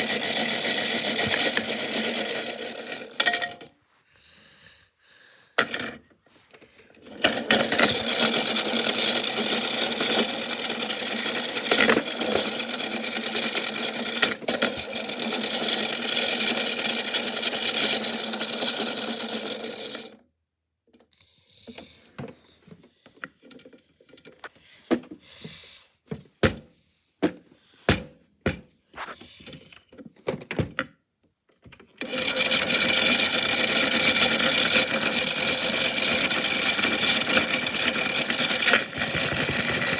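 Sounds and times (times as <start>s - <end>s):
rock grinding in washing machine: 0.0s - 3.7s, 7.1s - 20.1s, 32.0s - 39.9s.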